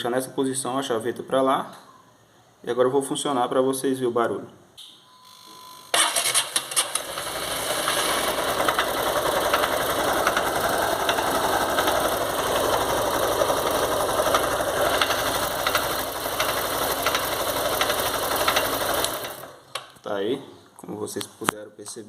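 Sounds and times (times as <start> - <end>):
motorcycle engine running roughly: 6.0 - 19.7
sharp clicks: 19.0 - 20.0.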